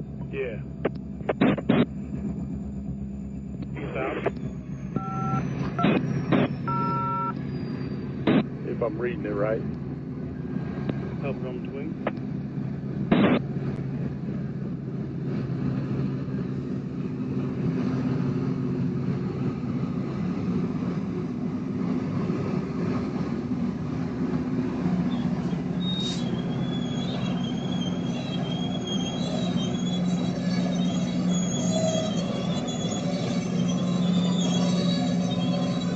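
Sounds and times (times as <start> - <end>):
diesel train engines droning: 0.0 - 35.9
steel wheels squealing on rail: 4.4 - 8.2, 24.3 - 35.9.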